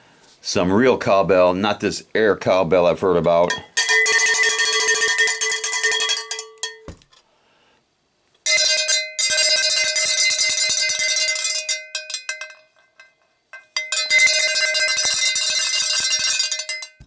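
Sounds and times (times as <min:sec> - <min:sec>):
cowbell struck rapidly: 0:03.4 - 0:06.9, 0:08.5 - 0:12.7, 0:13.7 - 0:17.0.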